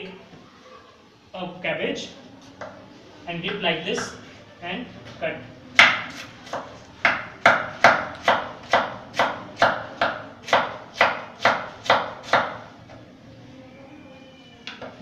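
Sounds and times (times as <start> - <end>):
knife chopping cabbage on board: 5.8 - 12.6.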